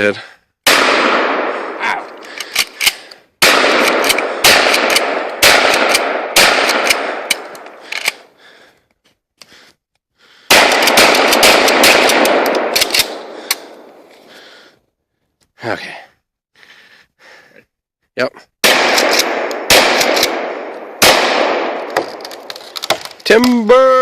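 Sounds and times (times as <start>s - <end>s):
shotgun shots with echo: 0.7s - 1.9s, 3.4s - 7.3s, 10.5s - 13.4s, 18.6s - 22.0s.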